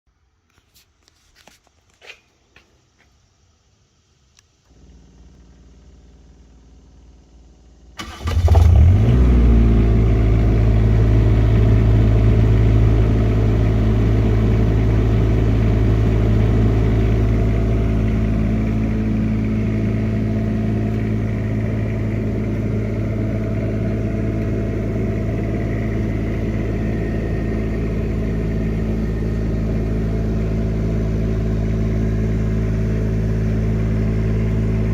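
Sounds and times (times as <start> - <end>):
low quiet hum: 0.2 - 8.0
diesel generator running: 4.6 - 34.9.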